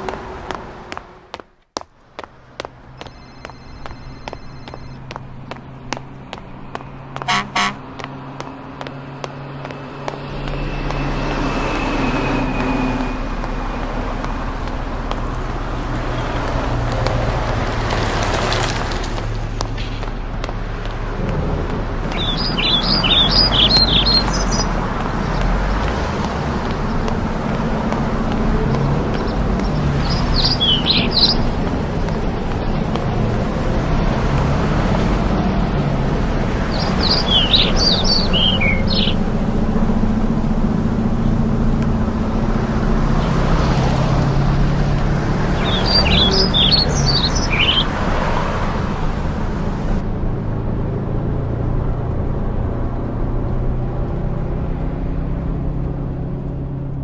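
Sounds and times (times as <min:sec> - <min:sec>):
songbird singing falling notes: 0:03.0 - 0:07.7, 0:22.0 - 0:34.0, 0:36.6 - 0:39.4, 0:44.7 - 0:48.0.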